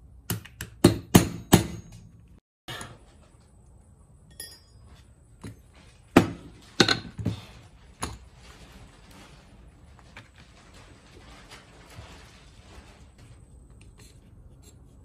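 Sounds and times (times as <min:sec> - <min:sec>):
metal parts and tools clinking: 0:04.2 - 0:05.8.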